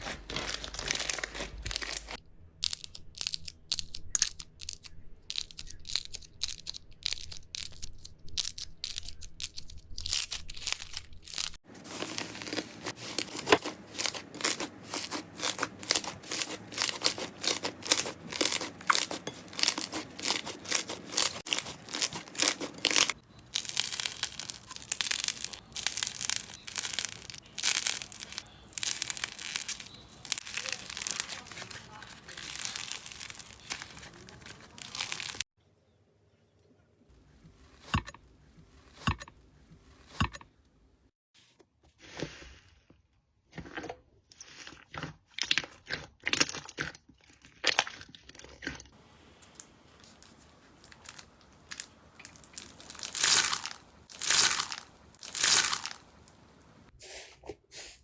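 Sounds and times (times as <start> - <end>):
slime squished by hand: 8.5 - 35.4.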